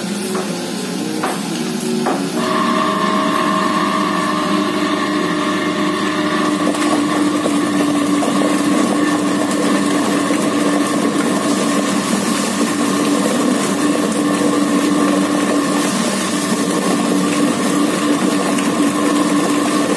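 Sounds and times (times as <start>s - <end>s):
plucking machine humming and whining: 0.0s - 19.9s.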